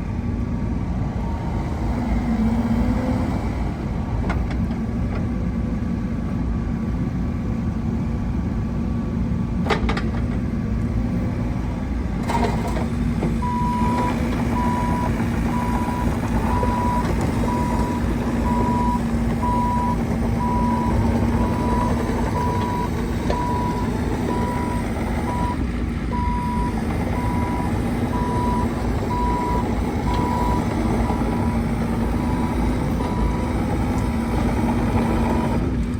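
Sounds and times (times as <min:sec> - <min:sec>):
diesel engine running: 0:00.0 - 0:35.9
motion alarm beeping: 0:13.4 - 0:30.7.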